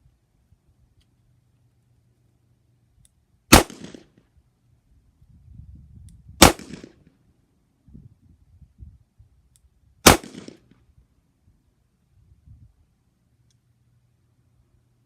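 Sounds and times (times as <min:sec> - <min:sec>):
revolver gunshots: 0:03.5 - 0:04.1, 0:06.4 - 0:07.0, 0:10.0 - 0:10.6.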